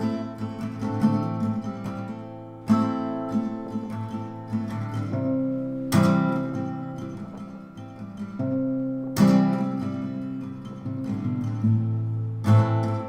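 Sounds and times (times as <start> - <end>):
picked guitar notes: 0.0 - 13.0
strummed acoustic guitar chords: 0.0 - 13.0.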